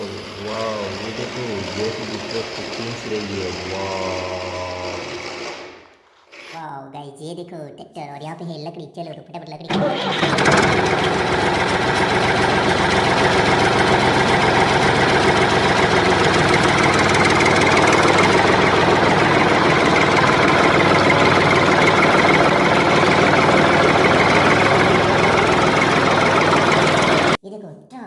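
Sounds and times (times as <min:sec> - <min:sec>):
engine droning: 0:00.0 - 0:05.5, 0:09.7 - 0:27.4.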